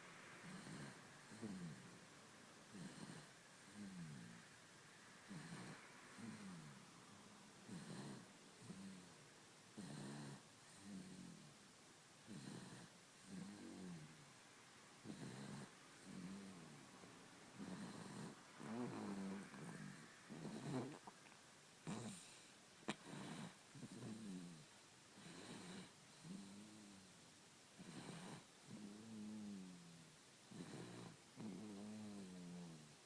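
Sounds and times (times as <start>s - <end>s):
baby snoring: 0.4s - 1.9s, 2.7s - 4.4s, 5.3s - 6.8s, 7.6s - 9.1s, 15.0s - 16.8s, 17.6s - 21.2s, 21.8s - 24.6s, 25.2s - 26.9s, 30.5s - 32.9s.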